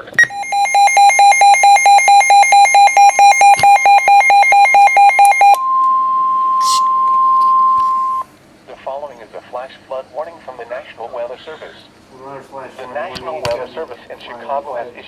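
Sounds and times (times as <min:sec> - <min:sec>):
rapid high beeps: 0:00.2 - 0:08.2
steady alarm tone: 0:00.2 - 0:08.3.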